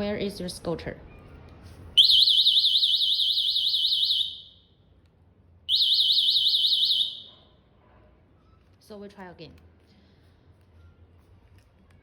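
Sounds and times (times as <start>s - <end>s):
warbling alarm siren: 2.0s - 4.6s, 5.7s - 7.3s.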